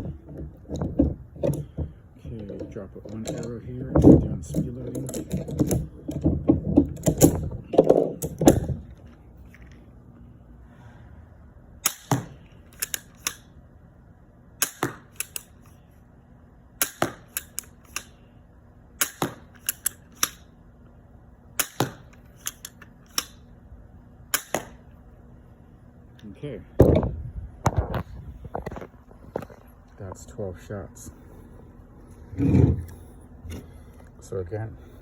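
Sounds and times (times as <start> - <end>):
handling clatter: 0.0 - 9.9
crossbow re-cocking clicks: 11.8 - 13.5, 14.6 - 15.8, 16.8 - 18.2, 19.0 - 20.4, 21.6 - 23.4.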